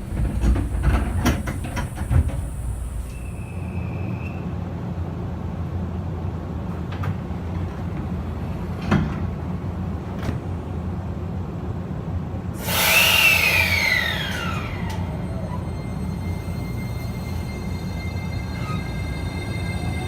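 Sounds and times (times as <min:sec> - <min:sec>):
train interior rumble: 0:00.0 - 0:20.0
whine changing pitch: 0:12.6 - 0:20.0.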